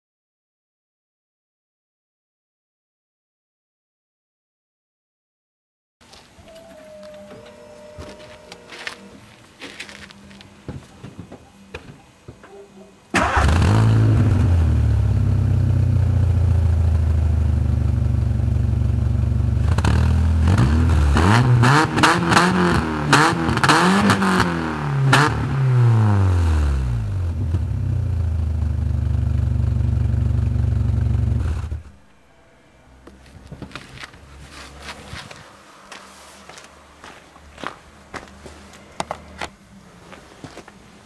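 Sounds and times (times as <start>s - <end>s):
car engine idling and revving: 13.2s - 32.0s.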